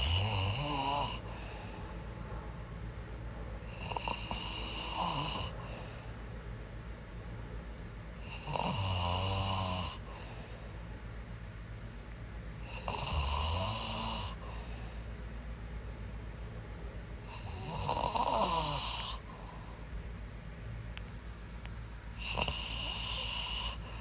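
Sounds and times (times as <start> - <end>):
person snoring: 0.0 - 1.5, 3.7 - 5.6, 8.2 - 10.2, 12.7 - 14.6, 17.3 - 19.3, 22.2 - 24.0
quiet breathing: 0.0 - 6.5, 8.2 - 11.4, 12.5 - 15.5, 17.2 - 20.2, 21.1 - 24.0.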